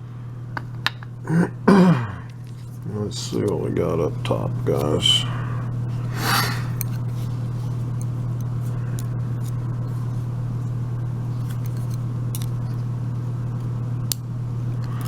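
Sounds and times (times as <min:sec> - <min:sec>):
low electrical hum: 0:00.0 - 0:15.0
clicks of small metal parts: 0:11.5 - 0:12.5.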